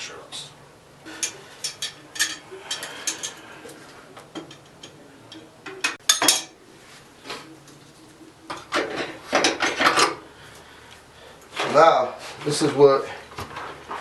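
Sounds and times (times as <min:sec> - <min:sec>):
wrench and metal fittings clinking: 0:01.2 - 0:03.4.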